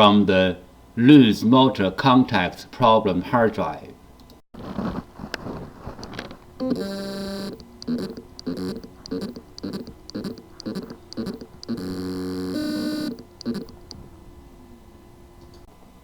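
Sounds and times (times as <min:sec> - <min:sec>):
hard drive motor whining: 0:06.0 - 0:15.4.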